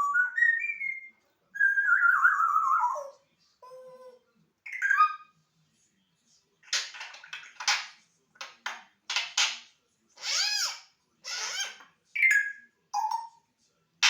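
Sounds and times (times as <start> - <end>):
parrot making harsh raspy sounds: 10.2 - 11.8.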